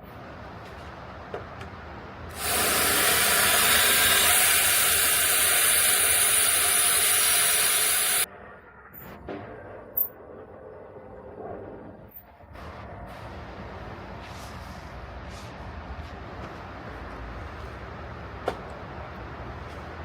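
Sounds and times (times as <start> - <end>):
loud steady hiss: 2.3 - 8.3.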